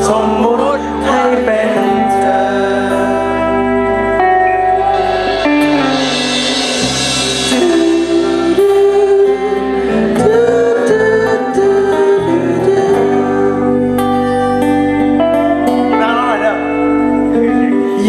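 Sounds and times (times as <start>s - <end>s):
live band music: 0.0s - 18.0s
person singing: 0.0s - 18.0s
cymbal and drum hits: 4.7s - 9.4s.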